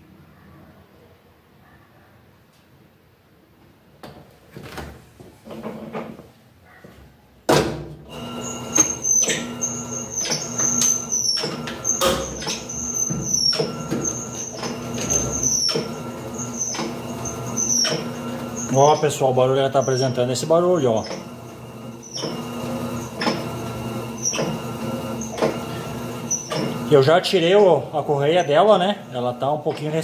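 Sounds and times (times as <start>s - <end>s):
washing machine hum and whine: 7.6s - 30.0s
washing machine motor starting: 8.1s - 30.0s.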